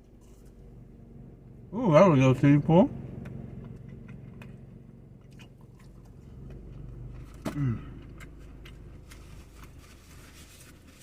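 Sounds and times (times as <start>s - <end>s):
chewing food: 3.2s - 9.9s
person humming mmm: 7.4s - 8.0s.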